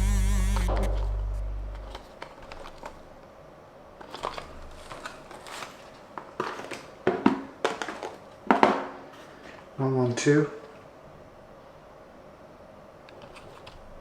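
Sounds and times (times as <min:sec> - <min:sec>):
packaging crinkling: 0:04.0 - 0:06.9.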